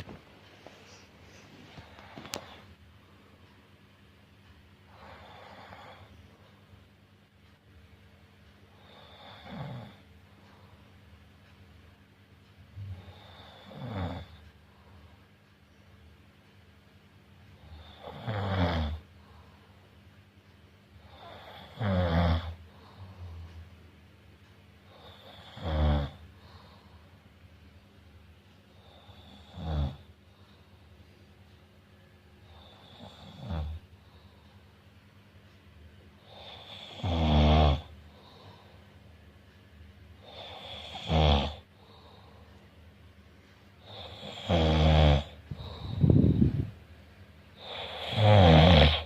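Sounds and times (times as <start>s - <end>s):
faint breaths: 0.0s - 3.7s, 12.7s - 15.6s, 19.0s - 21.8s, 22.4s - 23.9s, 24.8s - 27.6s, 28.7s - 31.3s, 32.4s - 35.2s, 37.8s - 39.1s, 40.2s - 44.5s, 45.2s - 48.3s
person snoring: 12.8s - 14.3s, 17.7s - 19.0s, 21.2s - 22.6s, 25.1s - 26.2s, 36.3s - 37.9s, 40.2s - 41.6s, 43.8s - 46.6s, 47.6s - 49.0s.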